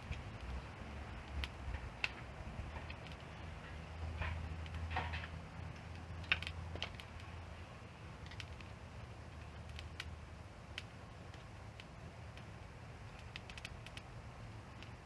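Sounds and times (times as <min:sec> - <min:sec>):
campfire crackling and popping: 0:00.0 - 0:15.0
low rumble of flame: 0:00.0 - 0:15.0.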